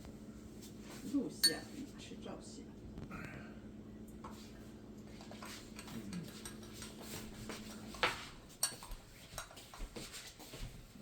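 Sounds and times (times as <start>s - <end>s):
steady low hum: 0.0s - 11.0s
spoon clinking in mug: 1.4s - 1.7s, 8.6s - 9.5s.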